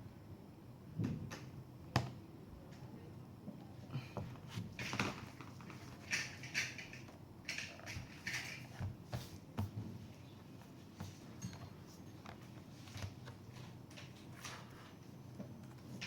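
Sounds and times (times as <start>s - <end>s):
small parts clicking and scraping: 5.6s - 8.8s.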